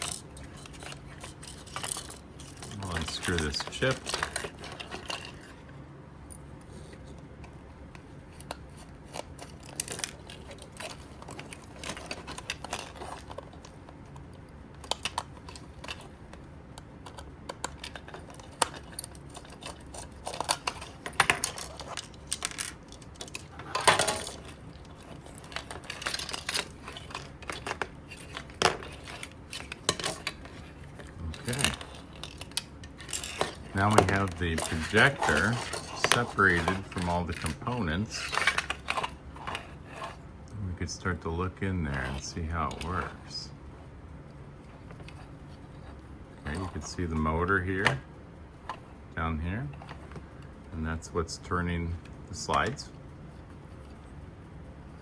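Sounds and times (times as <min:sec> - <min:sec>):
plastic scrape: 0:23.4 - 0:40.3.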